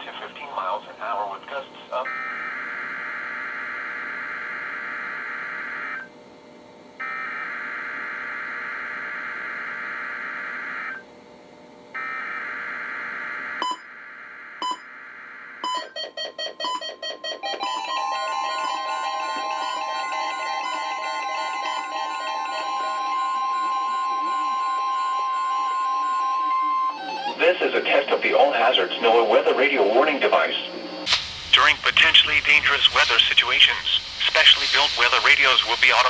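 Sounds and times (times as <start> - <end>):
steady warning alarm tone: 1.9 - 6.2, 7.0 - 11.0, 11.9 - 36.0
pulsing alarm beeps: 2.0 - 6.1, 13.6 - 13.9, 14.5 - 15.0, 15.6 - 27.4, 31.3 - 36.0
weather radio beeps and chirps: 15.7 - 25.6, 30.4 - 36.0.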